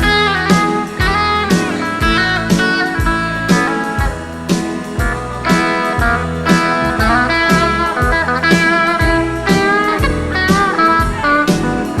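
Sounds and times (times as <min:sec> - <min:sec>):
country band instrumental: 0:00.0 - 0:12.0
gliding steel guitar notes: 0:00.0 - 0:12.0.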